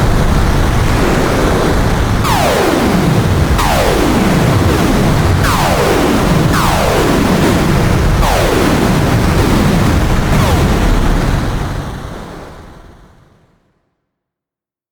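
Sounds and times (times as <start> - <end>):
rumble of explosions: 0.0 - 13.6
laser weapon zaps: 1.2 - 9.6.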